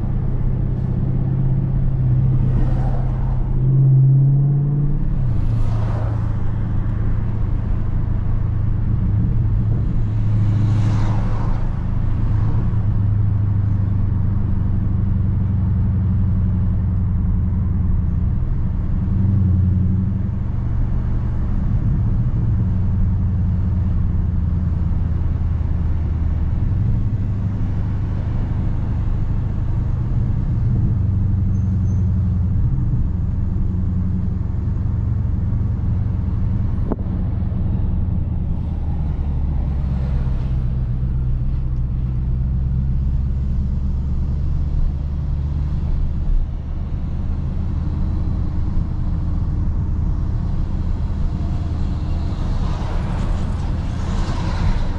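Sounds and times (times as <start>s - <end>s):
car exhaust droning at low revs: 28.6s - 54.9s.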